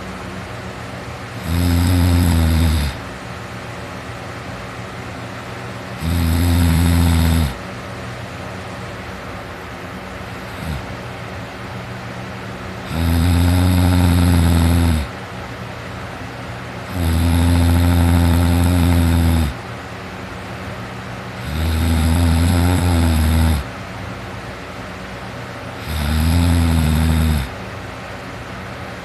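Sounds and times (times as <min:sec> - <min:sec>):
boy snoring heavily: 0:01.4 - 0:03.0, 0:06.0 - 0:07.6, 0:10.5 - 0:10.9, 0:12.9 - 0:15.1, 0:16.9 - 0:19.6, 0:21.4 - 0:23.7, 0:25.8 - 0:27.6.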